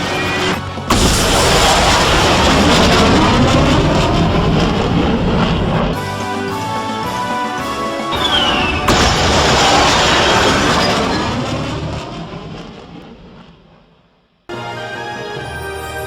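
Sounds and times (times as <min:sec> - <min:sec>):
music: 0:00.0 - 0:05.1, 0:05.8 - 0:11.3, 0:14.5 - 0:16.0
explosion boom and rumble: 0:00.0 - 0:06.0, 0:08.2 - 0:14.0
falling whistle: 0:06.9 - 0:11.2.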